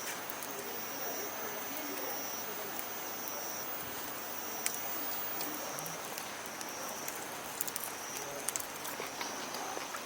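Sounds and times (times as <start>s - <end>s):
steady outdoor hiss: 0.0s - 10.0s
insects trilling: 0.5s - 10.0s.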